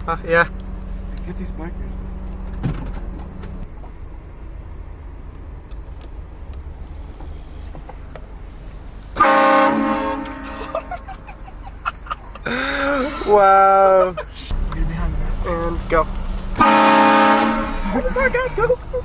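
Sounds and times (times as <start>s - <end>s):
low steady rumble: 0.0s - 19.0s
train horn blast: 9.2s - 10.7s, 16.6s - 17.8s.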